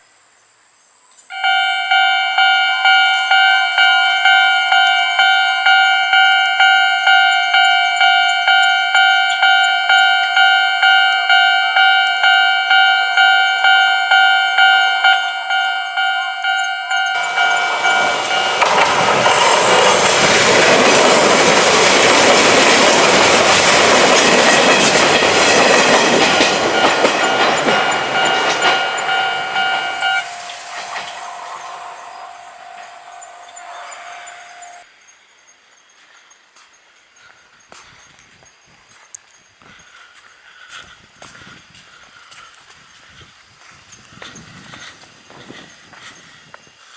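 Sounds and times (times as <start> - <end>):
level crossing warning bell: 1.3 - 34.9
train running over crossing: 1.3 - 34.9.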